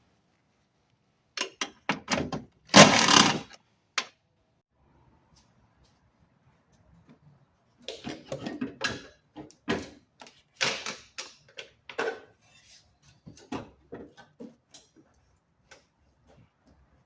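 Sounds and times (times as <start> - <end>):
hand tools clicking and knocking: 1.4 - 4.1.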